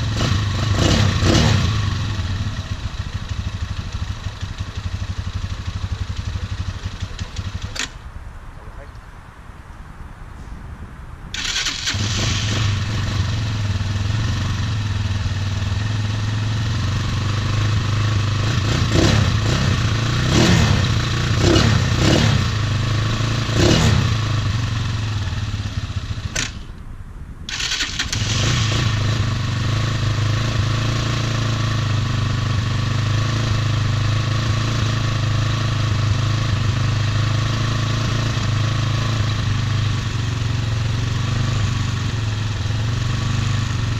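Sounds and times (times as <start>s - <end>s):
quad engine revving and idling: 0.0s - 7.9s, 11.4s - 26.6s, 27.6s - 43.9s.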